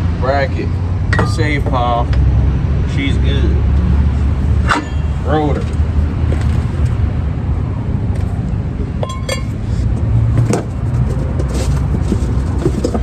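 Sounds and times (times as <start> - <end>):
steady low rumble: 0.0 - 11.3
metallic clinks: 1.2 - 1.8.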